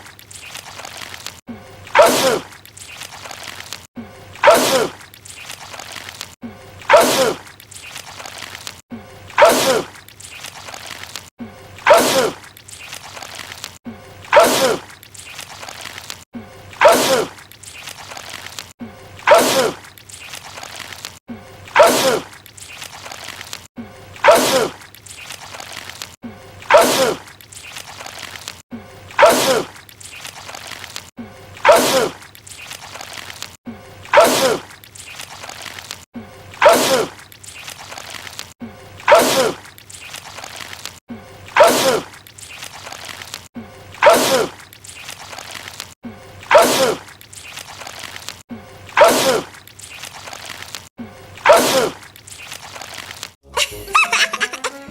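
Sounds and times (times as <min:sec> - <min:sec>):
man sneezing loudly: 0:26.7 - 0:27.2, 0:41.6 - 0:42.1
man sneezing: 0:41.6 - 0:42.0.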